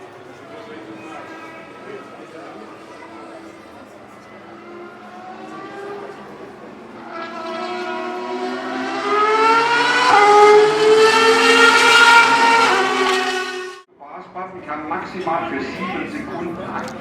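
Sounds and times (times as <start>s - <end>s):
race car engine at full throttle: 3.0s - 13.9s.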